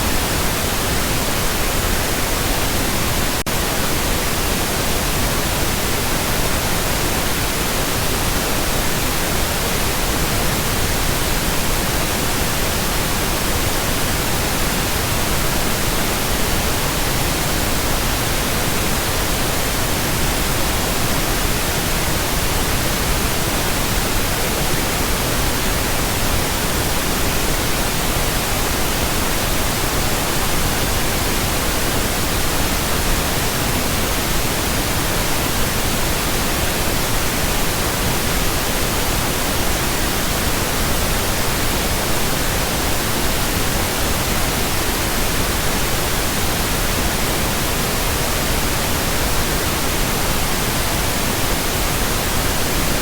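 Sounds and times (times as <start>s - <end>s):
steady pink noise hiss: 0.0s - 53.0s.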